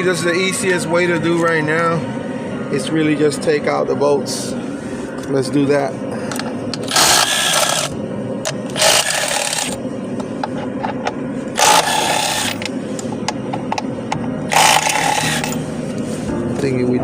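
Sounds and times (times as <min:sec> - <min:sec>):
machine running: 0:00.0 - 0:17.0
wrench whirring and clicking: 0:06.7 - 0:09.8, 0:11.6 - 0:12.7, 0:14.5 - 0:15.6.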